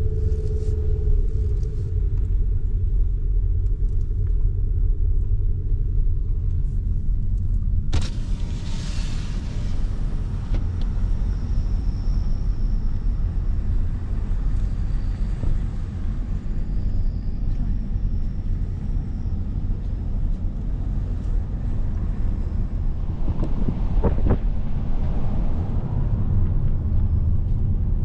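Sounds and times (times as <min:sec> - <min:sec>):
car driving low rumble: 0:00.0 - 0:28.0
brief hiss: 0:08.0 - 0:10.6.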